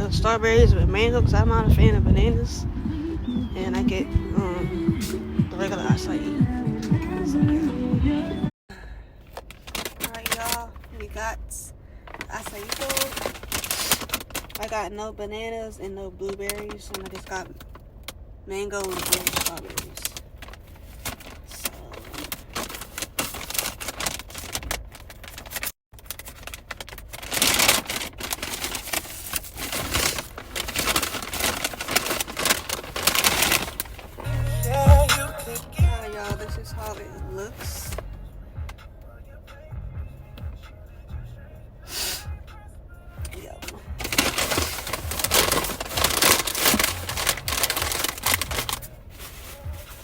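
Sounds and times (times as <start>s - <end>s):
plastic packaging crackling: 9.2s - 11.4s, 12.0s - 14.9s, 16.1s - 38.1s, 43.2s - 50.0s
rustling and crinkling handling: 9.2s - 11.4s, 12.0s - 38.8s, 43.2s - 50.0s.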